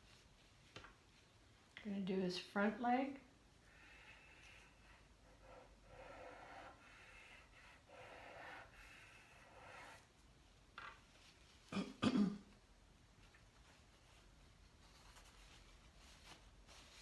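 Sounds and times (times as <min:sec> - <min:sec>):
chalk pastel scratching paper: 0:03.9 - 0:10.1
person clearing throat: 0:11.7 - 0:12.5.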